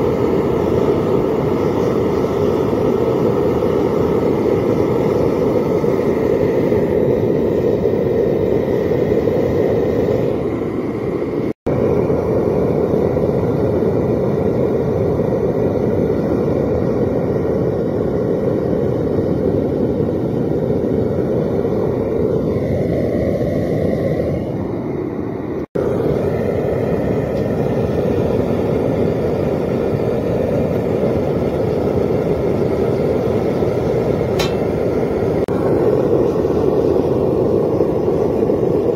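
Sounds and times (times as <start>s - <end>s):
propane burner rushing: 0.0s - 38.9s.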